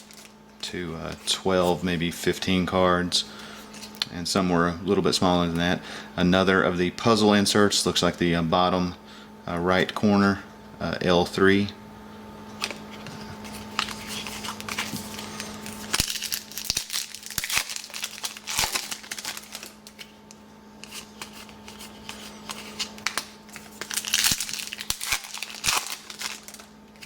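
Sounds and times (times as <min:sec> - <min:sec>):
card wrappers crinkling and tearing: 0:00.0 - 0:01.3, 0:13.4 - 0:27.0
steady low hum: 0:00.0 - 0:27.0.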